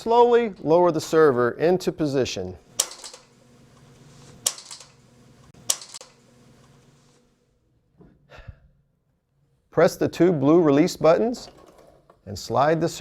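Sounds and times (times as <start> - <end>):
faint steady hum: 0.0 - 13.0
sharp metallic clicks: 2.8 - 3.3, 5.6 - 6.2.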